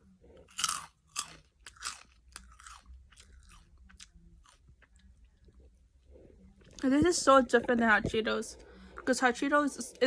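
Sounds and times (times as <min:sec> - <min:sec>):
person chewing crunchy snacks: 0:00.3 - 0:05.2.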